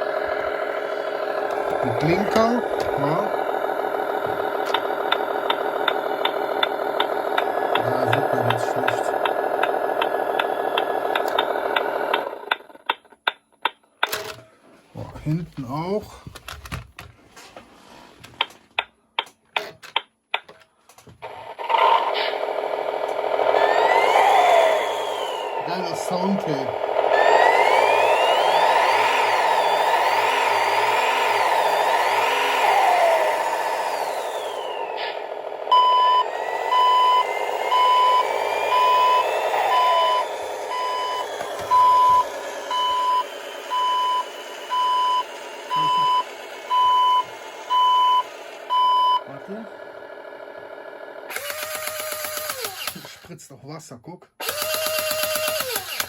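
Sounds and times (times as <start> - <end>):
motor running sound: 0.0 - 13.4, 21.0 - 53.3, 54.4 - 56.0
reversing alarm beeps: 35.7 - 49.3.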